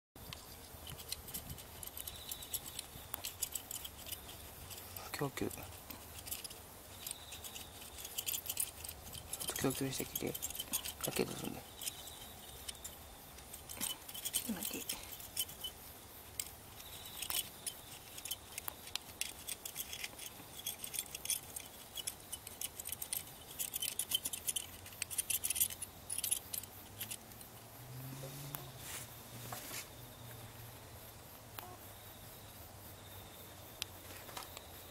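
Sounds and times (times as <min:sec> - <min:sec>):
solder crackling and ticking: 0:00.2 - 0:27.6.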